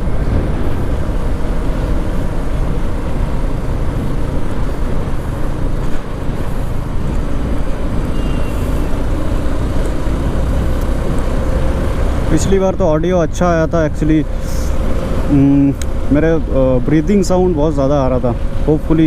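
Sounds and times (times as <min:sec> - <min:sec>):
motorcycle engine running: 0:00.0 - 0:13.0
wind and road noise: 0:00.0 - 0:19.0.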